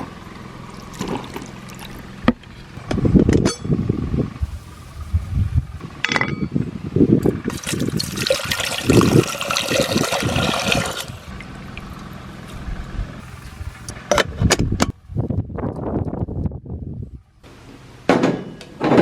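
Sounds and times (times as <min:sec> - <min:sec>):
steady low hum: 0:00.0 - 0:09.4, 0:10.0 - 0:18.7
water pouring and splashing: 0:00.7 - 0:02.2, 0:07.4 - 0:12.5.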